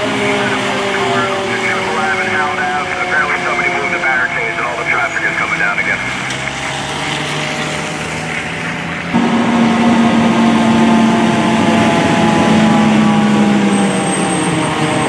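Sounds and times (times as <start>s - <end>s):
loud low horn tone: 0.0s - 6.2s, 9.1s - 15.0s
fire truck engine running: 0.0s - 15.0s.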